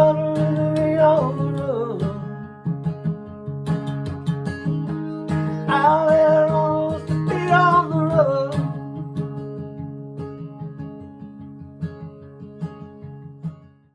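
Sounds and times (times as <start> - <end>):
acoustic guitar strumming: 0.0 - 13.9.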